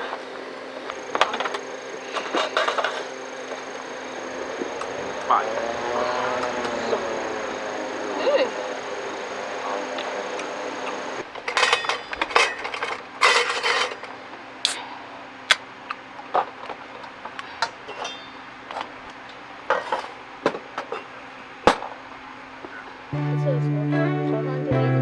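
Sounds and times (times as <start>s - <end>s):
metal utensils clinking on pan: 11.0s - 14.2s, 17.6s - 18.9s.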